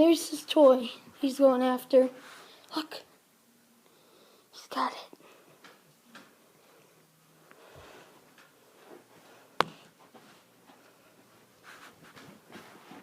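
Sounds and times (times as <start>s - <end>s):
cat rustling and scuffing: 11.4s - 13.0s.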